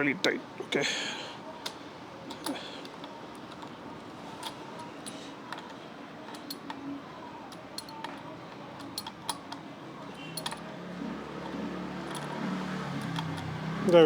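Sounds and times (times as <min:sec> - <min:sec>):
pliers clicking on metal bolt: 0:04.4 - 0:06.8, 0:07.5 - 0:10.7, 0:11.4 - 0:13.6.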